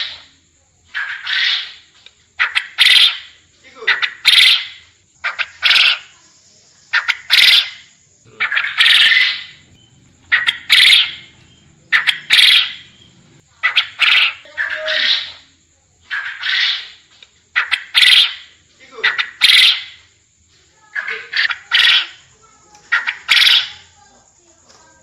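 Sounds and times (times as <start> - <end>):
quail calling: 0.0 - 0.3, 0.9 - 6.2, 6.9 - 20.1, 20.9 - 24.0.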